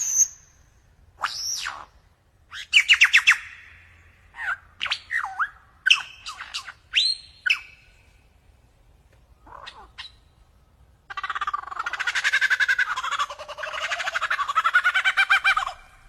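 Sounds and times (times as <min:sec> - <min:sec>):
lyrebird singing: 0:04.4 - 0:07.9, 0:09.4 - 0:10.5.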